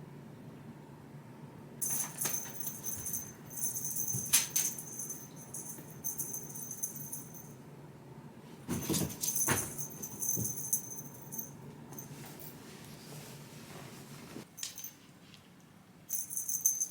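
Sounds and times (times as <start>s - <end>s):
light metallic jingling: 1.8s - 7.6s, 8.8s - 12.6s, 14.6s - 15.1s, 16.1s - 16.9s.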